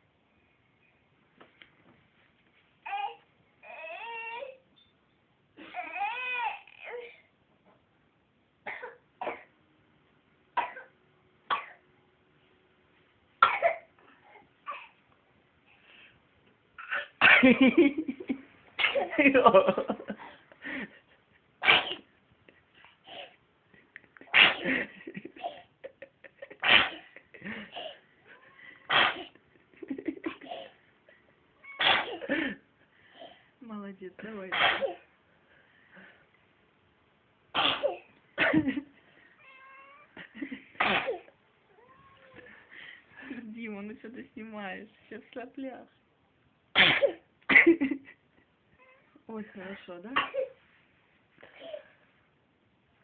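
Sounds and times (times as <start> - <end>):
baby coughing and sneezing: 8.6 - 9.5, 10.6 - 11.8, 13.4 - 13.9, 16.8 - 17.5, 18.8 - 19.2, 21.6 - 22.1, 24.3 - 24.7, 26.6 - 27.1, 28.9 - 29.4, 31.7 - 32.3, 34.5 - 35.1, 37.5 - 38.6, 40.8 - 41.4, 46.7 - 47.6, 50.2 - 50.6
girl sneezing: 31.8 - 32.3, 46.8 - 47.2.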